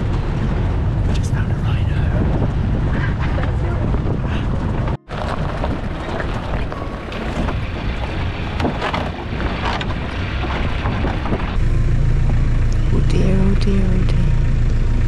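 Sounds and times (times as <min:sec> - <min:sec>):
wind buffeting microphone: 0:00.0 - 0:11.6
vehicle engine running: 0:00.0 - 0:15.0.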